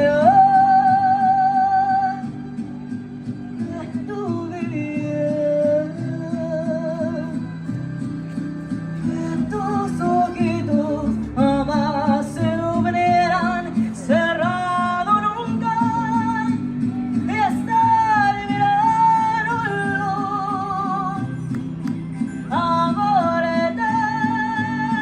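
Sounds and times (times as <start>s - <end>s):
acoustic guitar strumming: 0.0s - 25.0s
person singing folk song: 0.0s - 25.0s.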